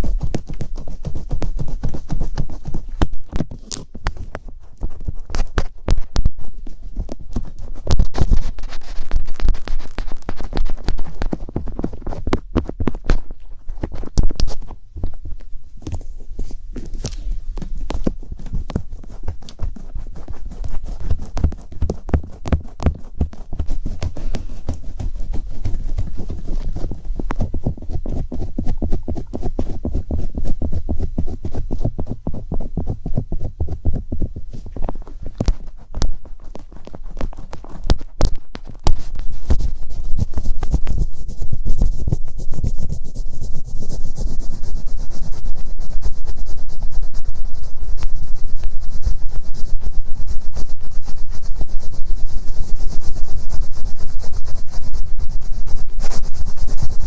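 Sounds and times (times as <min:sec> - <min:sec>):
tapping on microphone: 0:00.0 - 0:43.0
scratching on microphone: 0:00.0 - 0:57.0.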